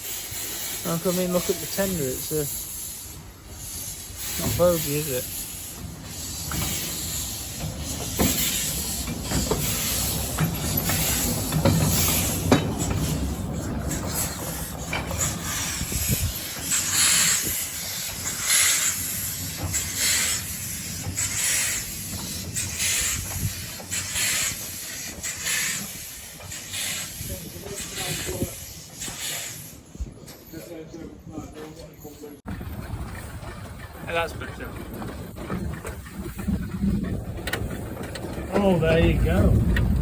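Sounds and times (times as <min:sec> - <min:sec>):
hissing steam exhaust beats: 0:00.0 - 0:30.8, 0:32.5 - 0:40.0
steam locomotive rumble: 0:00.0 - 0:40.0.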